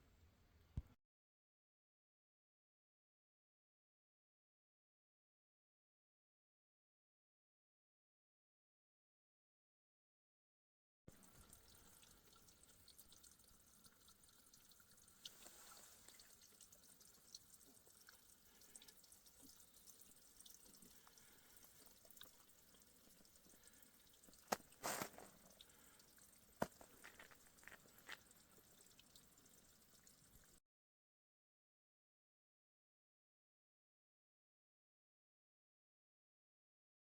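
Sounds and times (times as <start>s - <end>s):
snowmelt dripping: 11.1s - 30.6s.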